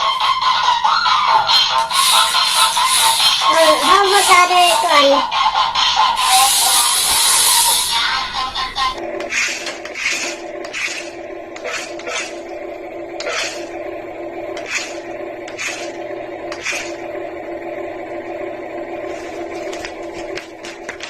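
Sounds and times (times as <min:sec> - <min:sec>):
toy motor humming: 0:00.0 - 0:12.5, 0:13.2 - 0:13.7, 0:14.6 - 0:17.0
short scraping noises: 0:01.8 - 0:05.1.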